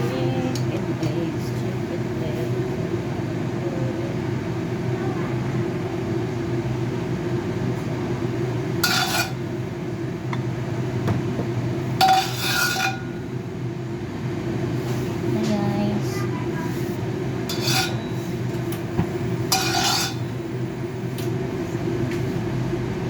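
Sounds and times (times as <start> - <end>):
steady low hum: 0.0 - 23.0
dishes and utensils clinking: 8.8 - 9.5, 12.0 - 13.2, 17.5 - 20.3.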